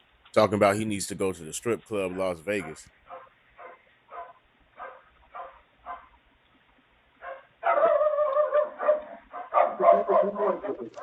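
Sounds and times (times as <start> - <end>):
dog barking: 2.1 - 6.2, 7.2 - 11.0.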